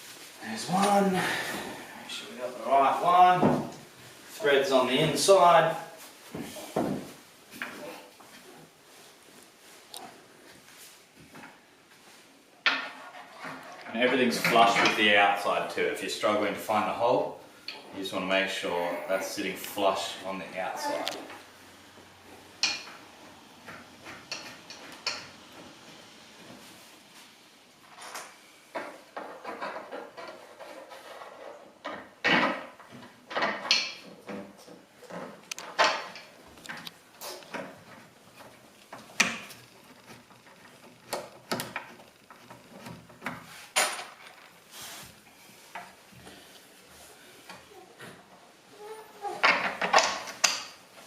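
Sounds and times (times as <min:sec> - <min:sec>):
wooden parts knocking and clicking: 0:31.8 - 0:44.5, 0:49.4 - 0:50.8.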